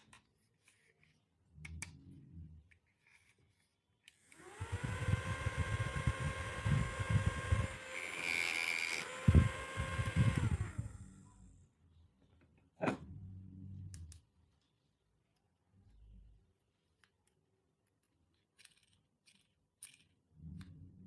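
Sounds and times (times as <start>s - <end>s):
small electric motor whirring: 4.2s - 11.6s.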